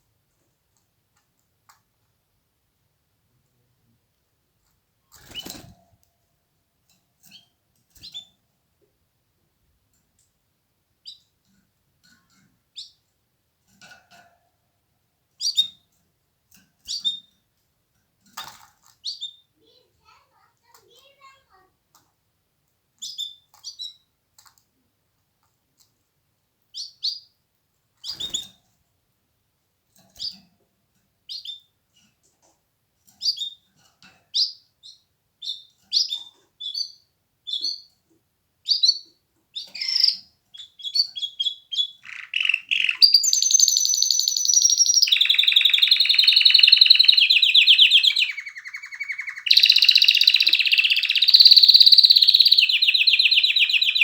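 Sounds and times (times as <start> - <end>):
canary chirping and trilling: 5.1 - 6.0, 7.0 - 8.4, 11.0 - 13.1, 15.3 - 17.5, 18.2 - 22.1, 22.9 - 24.6, 26.7 - 27.4, 28.0 - 28.8, 30.0 - 30.5, 31.2 - 54.0.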